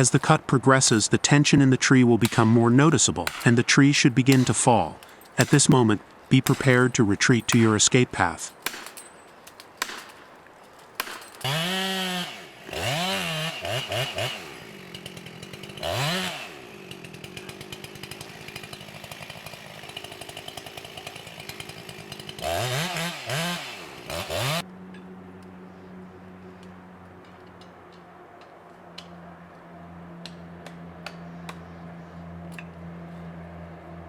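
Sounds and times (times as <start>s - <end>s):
two-stroke chainsaw revving: 2.1s - 7.8s, 11.0s - 24.7s.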